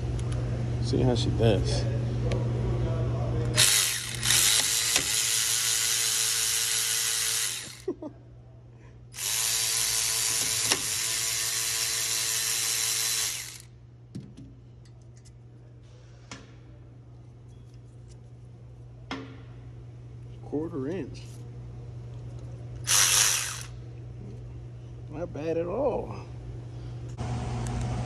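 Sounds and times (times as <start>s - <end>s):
cordless ratchet spinning a bolt: 3.6s - 7.9s, 9.2s - 13.7s, 22.8s - 23.8s.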